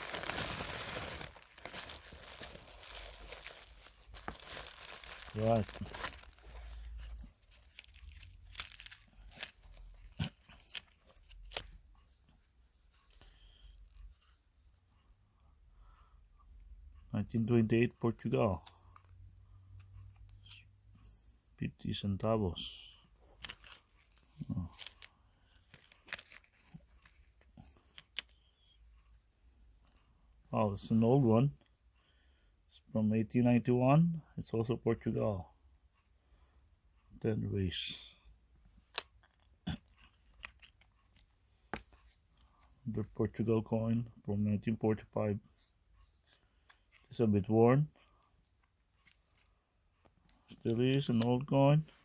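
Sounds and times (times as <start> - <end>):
packaging crinkling and tearing: 0.0 - 11.7, 23.4 - 27.2
rustling: 0.0 - 13.2, 23.2 - 28.3.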